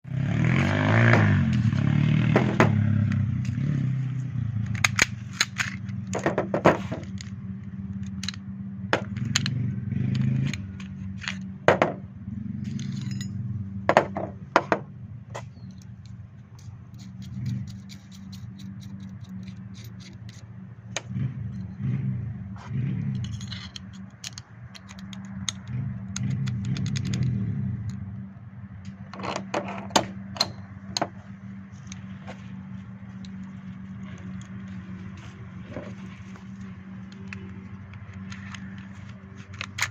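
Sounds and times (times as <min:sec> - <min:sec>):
pistol parts clicking and clattering: 0:04.6 - 0:08.4, 0:09.0 - 0:12.0, 0:12.7 - 0:21.6, 0:23.1 - 0:28.0, 0:33.1 - 0:39.9.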